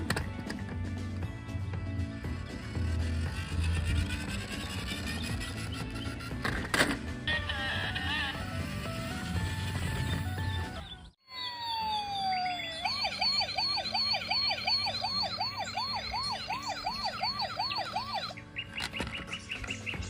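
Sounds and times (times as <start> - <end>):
electronic siren yelp: 8.3 - 18.8.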